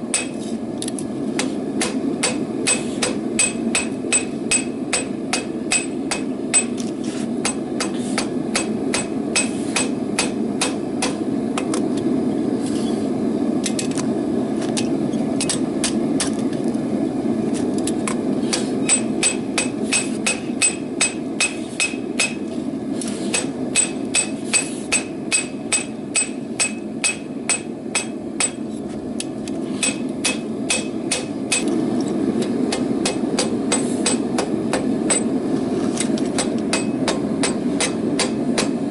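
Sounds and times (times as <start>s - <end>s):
hammer striking metal on anvil: 0.1s - 0.4s, 1.4s - 6.8s, 7.4s - 11.7s, 18.5s - 22.4s, 23.3s - 28.6s, 29.8s - 31.7s, 32.4s - 35.3s, 36.3s - 38.8s.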